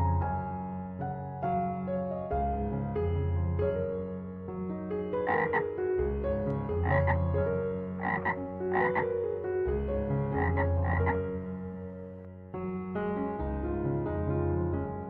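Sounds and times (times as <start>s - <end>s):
soft piano music: 0.0s - 15.0s
frog croaking: 5.2s - 12.3s.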